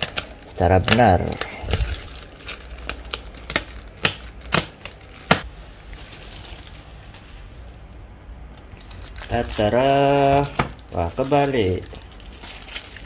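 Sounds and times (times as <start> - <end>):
cardboard packaging snaps: 2.4 - 5.5.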